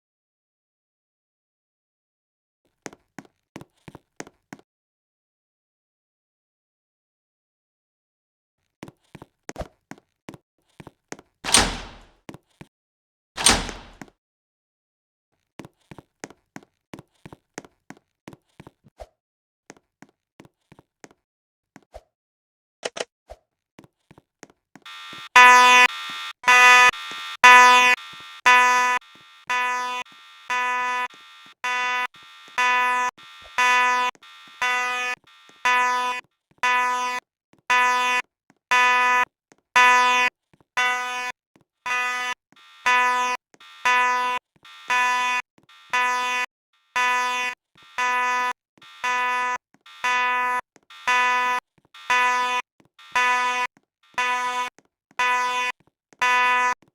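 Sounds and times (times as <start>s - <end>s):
fire alarm beeping: 11.5s - 12.1s, 13.4s - 14.0s, 24.9s - 41.3s, 41.9s - 56.8s.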